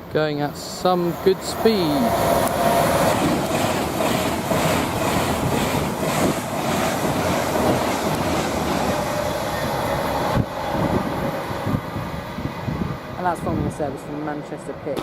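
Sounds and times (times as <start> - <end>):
electric train passing at speed: 0.0 - 15.0.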